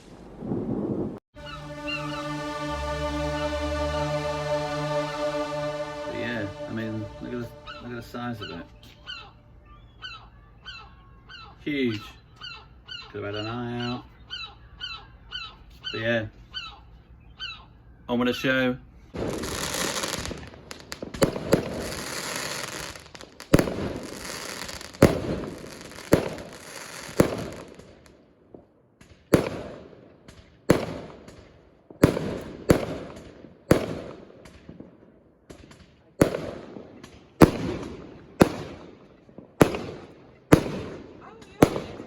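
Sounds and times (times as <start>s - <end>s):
fireworks hissing crackle: 19.2s - 28.1s
fireworks sharp bangs: 19.2s - 34.9s, 35.5s - 42.0s.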